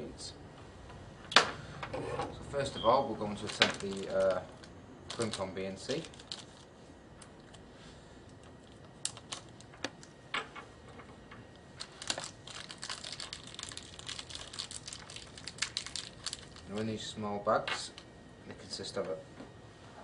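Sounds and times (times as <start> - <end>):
plastic bag crinkling: 3.2 - 6.7, 8.3 - 10.0, 11.8 - 17.1.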